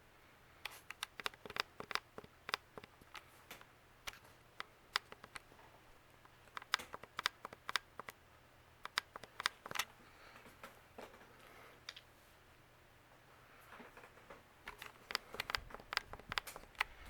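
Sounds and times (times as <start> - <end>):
ceiling fan hum: 0.0 - 17.0
sharp clicks and ticks: 0.6 - 5.5, 6.3 - 8.2, 8.8 - 9.9, 14.7 - 17.0.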